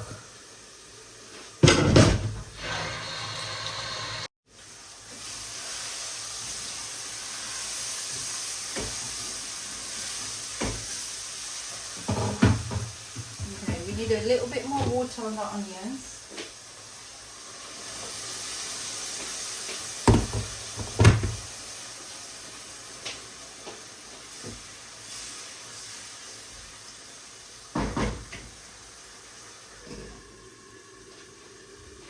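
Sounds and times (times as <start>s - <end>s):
onions hissing in a pan: 0.0s - 1.7s, 2.5s - 32.0s
kitchen knocks: 1.6s - 2.5s, 12.1s - 15.1s, 20.0s - 21.5s, 27.8s - 28.4s.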